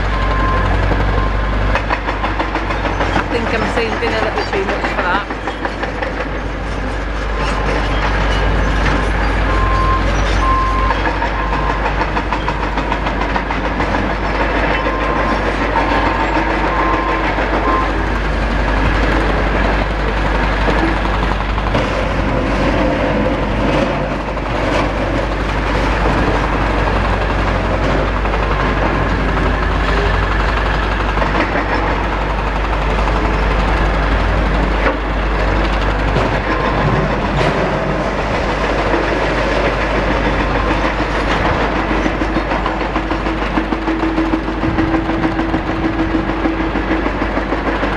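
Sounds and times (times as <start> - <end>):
diesel engines running: 0.0 - 47.9
machine warning beeps: 0.1 - 1.4, 9.2 - 11.8, 14.7 - 15.4, 16.0 - 18.0.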